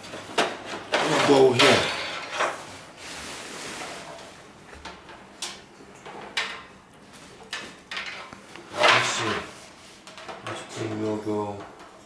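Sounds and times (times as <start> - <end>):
scraping rustle: 0.8 - 4.4, 8.6 - 11.1.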